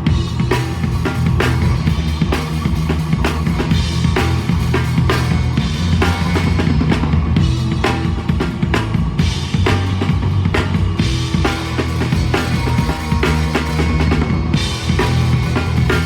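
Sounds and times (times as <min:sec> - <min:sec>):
punk rock band playing: 0:00.0 - 0:16.0.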